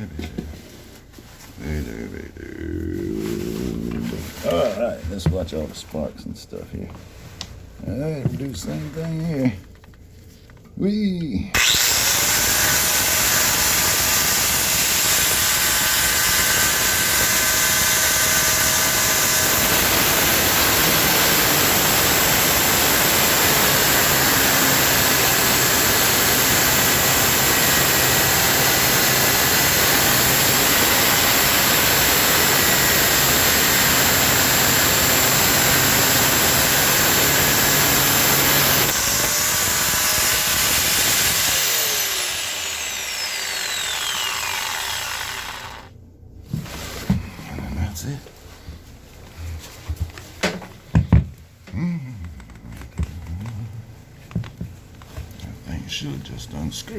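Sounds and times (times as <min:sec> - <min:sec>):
electric cutting tool grinding metal: 0:11.6 - 0:45.9.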